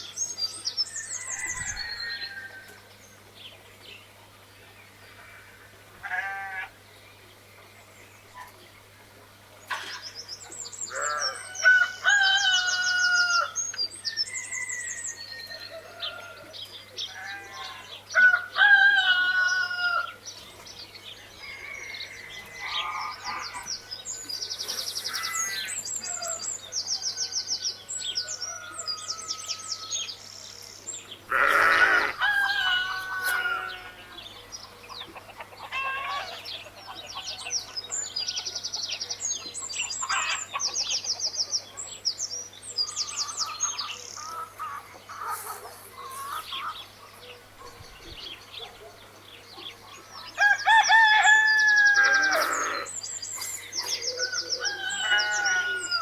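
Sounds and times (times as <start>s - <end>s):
roosters crowing: 0.6s - 3.0s, 5.1s - 6.8s, 10.8s - 20.3s, 21.0s - 30.4s, 31.2s - 38.8s, 39.7s - 40.8s, 50.2s - 56.0s
small birds chirping: 20.2s - 56.0s
hens clucking: 31.3s - 37.7s, 44.2s - 47.8s.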